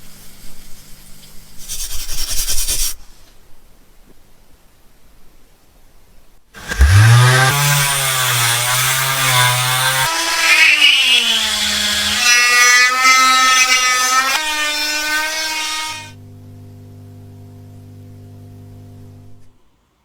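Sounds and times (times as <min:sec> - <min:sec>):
power tool motor whining: 0:06.6 - 0:19.6.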